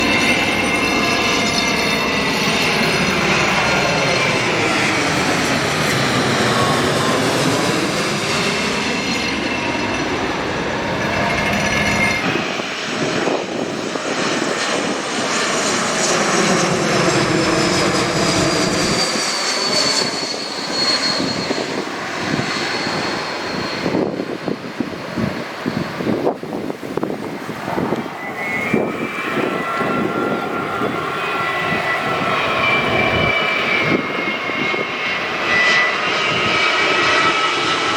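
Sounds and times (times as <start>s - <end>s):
jet airliner passing overhead: 0.0s - 37.9s.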